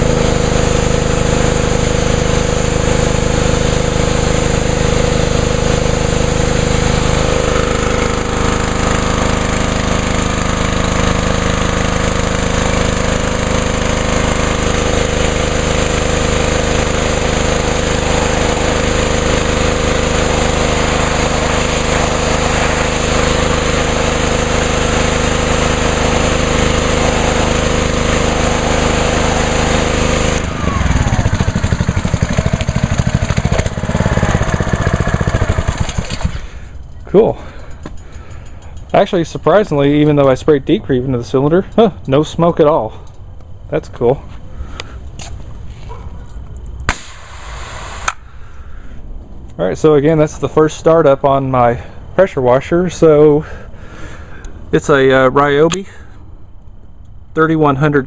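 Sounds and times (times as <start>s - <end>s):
pressure washer engine running: 0.0s - 40.6s, 46.9s - 49.0s.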